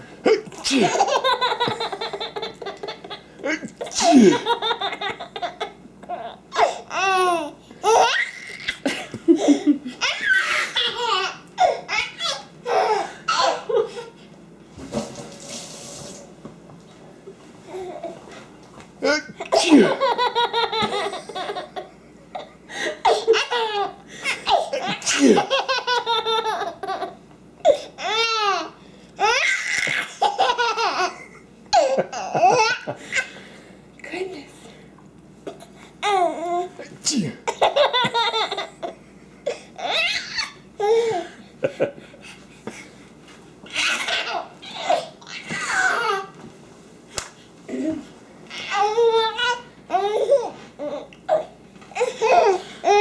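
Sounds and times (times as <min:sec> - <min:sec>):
baby laughing: 0:00.5 - 0:14.1, 0:19.1 - 0:27.2, 0:28.0 - 0:33.3, 0:37.5 - 0:39.0, 0:39.8 - 0:41.3, 0:43.7 - 0:46.3, 0:48.5 - 0:53.0
water spray hissing: 0:15.0 - 0:16.3.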